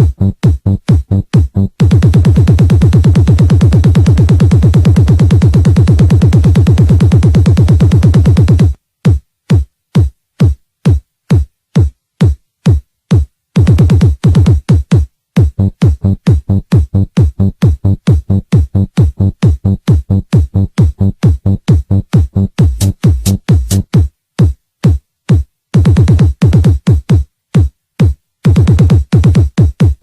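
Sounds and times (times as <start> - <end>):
electronic dance music: 0.0 - 8.8, 12.7 - 24.5, 25.8 - 30.0
fast-pulsing bass: 0.0 - 8.8, 13.6 - 14.7, 15.4 - 24.1, 25.8 - 26.8, 28.5 - 29.5
kick drum: 0.0 - 30.0.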